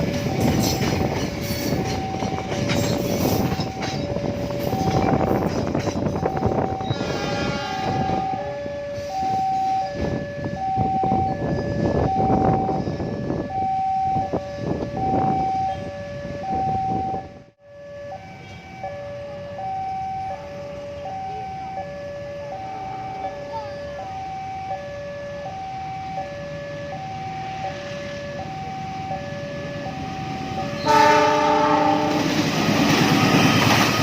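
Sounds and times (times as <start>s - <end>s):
train passing rumble: 0.0s - 34.0s
level crossing two-tone alarm: 1.6s - 7.1s, 7.9s - 32.0s.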